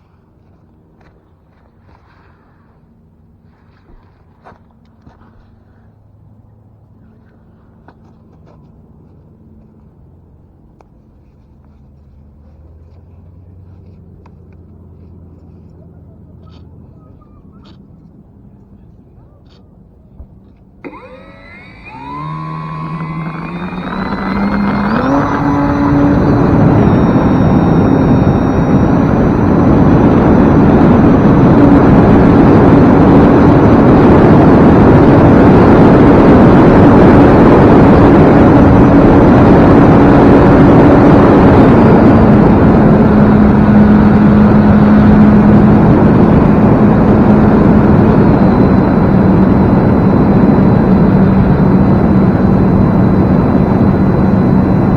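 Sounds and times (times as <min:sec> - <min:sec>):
electric motor whine: 0:20.8 - 0:54.9
propeller rushing noise: 0:20.9 - 0:34.9.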